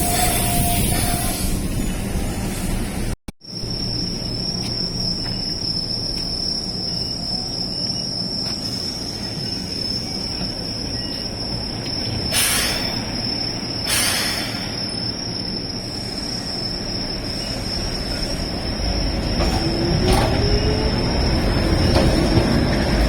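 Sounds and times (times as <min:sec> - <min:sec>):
train rumbling: 0:00.0 - 0:23.0
short bursts of hiss: 0:13.9 - 0:14.8.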